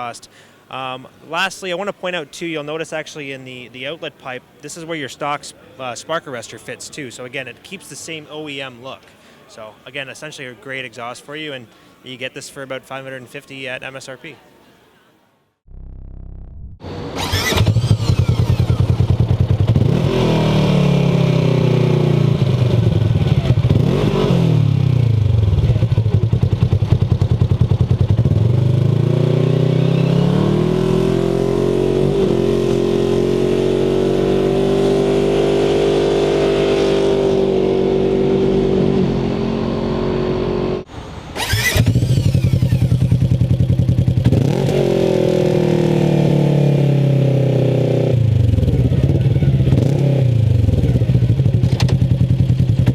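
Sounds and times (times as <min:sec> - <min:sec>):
engine revving through exhaust: 0:17.2 - 0:25.4, 0:28.2 - 0:51.5.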